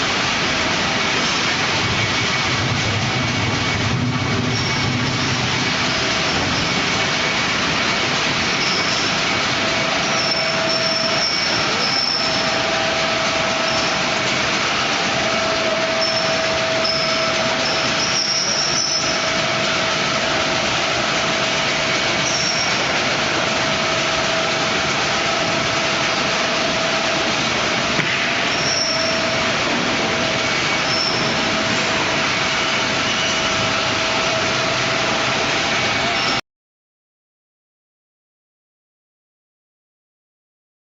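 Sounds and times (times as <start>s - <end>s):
machinery rumbling and rattling: 0.0s - 36.4s
metallic squeals: 3.2s - 24.5s, 28.2s - 36.4s.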